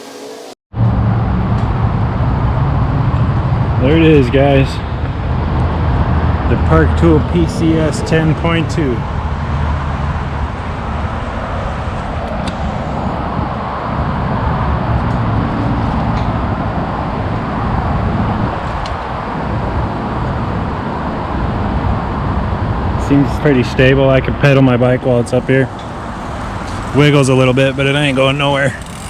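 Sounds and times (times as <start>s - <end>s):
freeway traffic: 0.0s - 29.0s.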